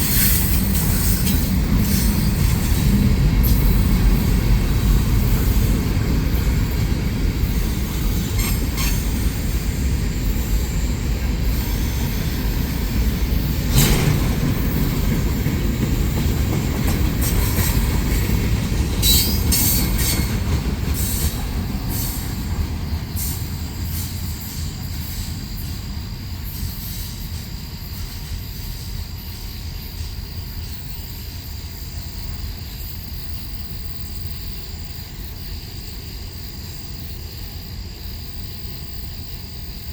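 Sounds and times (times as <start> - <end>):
train clicks: 0.0 - 29.4
freight train cars rumbling: 0.0 - 39.9
high wheel squeals: 8.1 - 9.6, 19.0 - 20.4.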